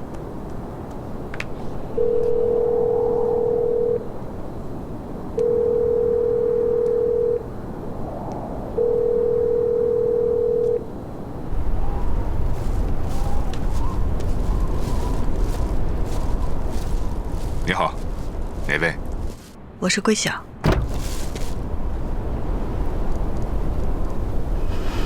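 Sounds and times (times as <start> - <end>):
telephone ringback tone: 2.0 - 4.0, 5.4 - 7.4, 8.8 - 10.9.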